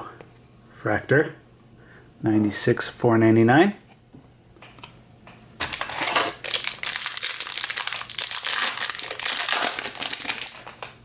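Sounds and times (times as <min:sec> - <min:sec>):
foil wrapper crinkling: 0:05.6 - 0:11.0.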